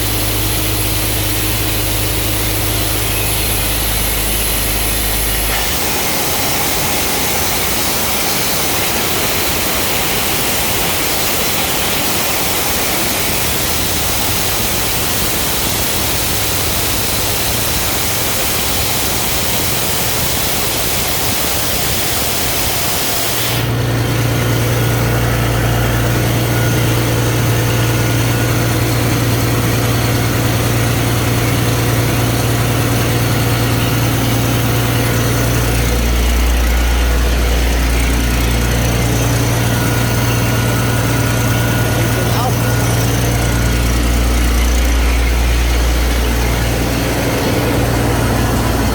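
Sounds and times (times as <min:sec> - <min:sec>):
loud hiss of air: 0:00.0 - 0:23.8
air compressor running: 0:00.0 - 0:48.9.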